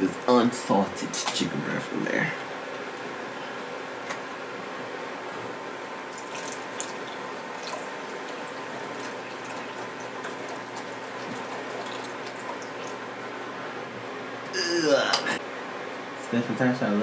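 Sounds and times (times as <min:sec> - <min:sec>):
wet liquid sounds of mixing: 0:06.0 - 0:13.2.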